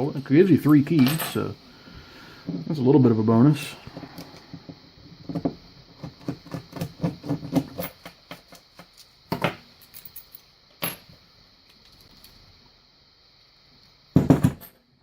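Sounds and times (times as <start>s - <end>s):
loud knocks: 14.2s - 14.6s.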